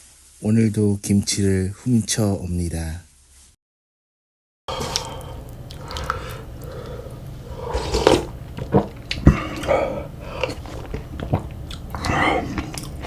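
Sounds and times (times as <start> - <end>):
person chewing: 4.7 - 13.0.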